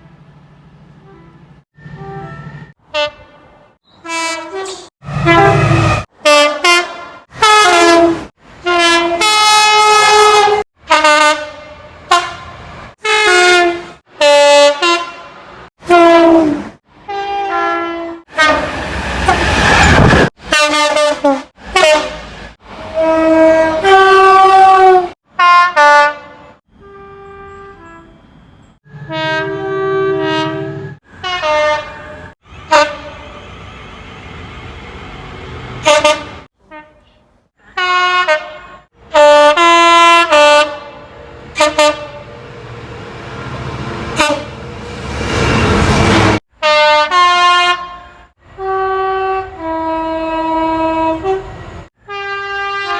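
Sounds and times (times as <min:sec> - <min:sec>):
train horn blasts: 0:01.0 - 0:33.5, 0:35.8 - 0:42.4, 0:44.0 - 0:52.9
rushing noise: 0:18.6 - 0:20.5.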